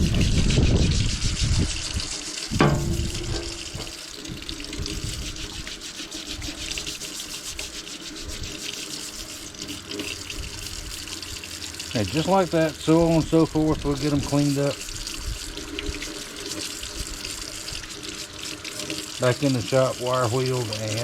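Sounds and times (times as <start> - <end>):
running water hissing: 0.0 - 21.0
sharp knock: 2.6 - 4.0.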